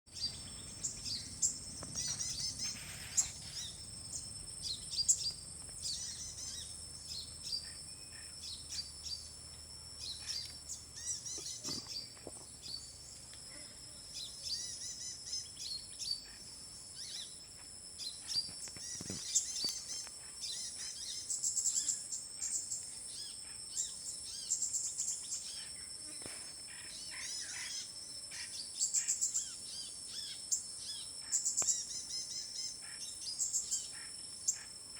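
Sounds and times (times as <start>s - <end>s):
birds chirping and calling: 0.1s - 9.4s, 10.0s - 13.0s
high-pitched insect drone: 0.1s - 34.9s.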